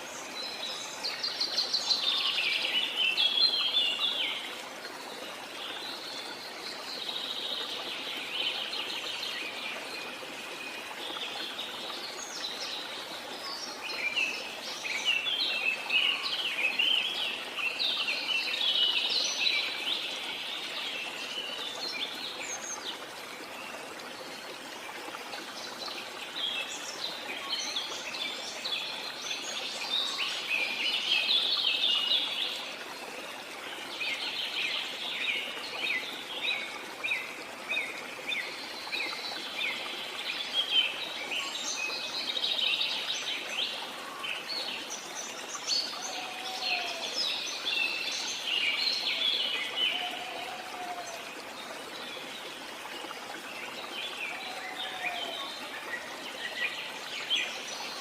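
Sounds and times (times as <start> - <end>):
waterfall rushing: 53.8 - 58.0.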